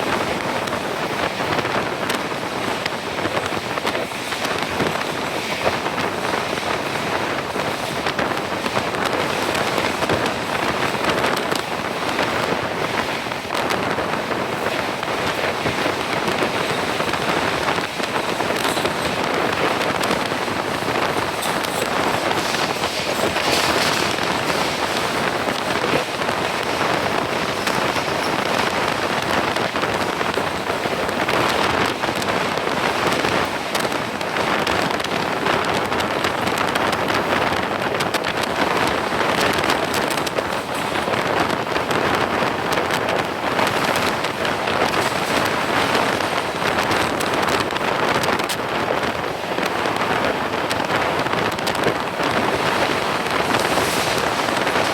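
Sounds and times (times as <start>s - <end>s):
moving train rushing: 0.0s - 54.9s
rain: 0.0s - 54.9s
wind noise: 0.0s - 54.9s.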